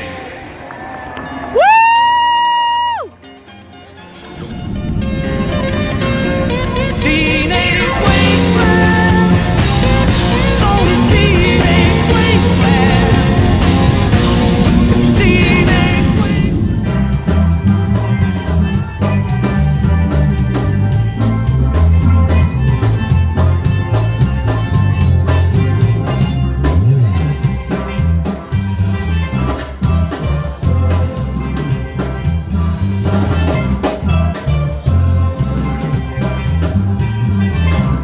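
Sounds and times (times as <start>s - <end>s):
upbeat music with drum beat: 8.0s - 38.0s.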